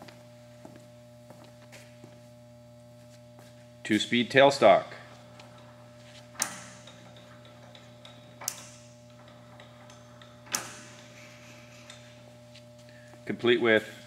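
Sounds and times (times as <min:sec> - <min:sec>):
steady low hum: 0:00.0 - 0:14.0
sharp ringing clicks: 0:05.4 - 0:11.2.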